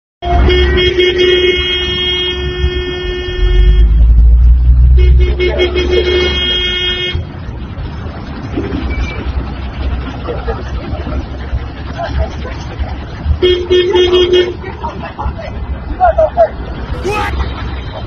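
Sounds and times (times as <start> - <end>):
horn blasts: 0.2 - 4.2.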